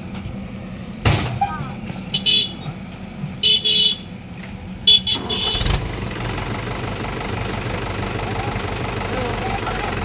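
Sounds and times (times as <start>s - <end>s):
engine hum: 0.0s - 10.0s
vehicle horn honking: 2.1s - 2.6s, 3.4s - 4.1s, 4.9s - 5.7s.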